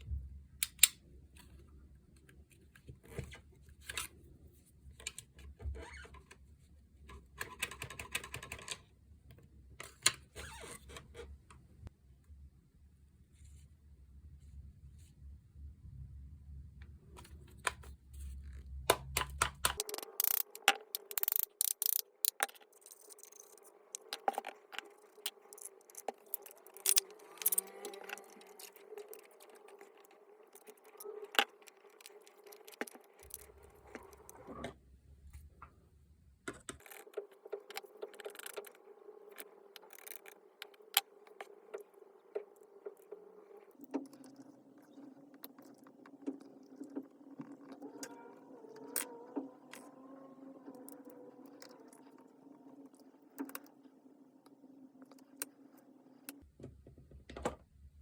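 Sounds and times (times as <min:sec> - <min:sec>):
small metal parts clinking: 0:19.8 - 0:33.5.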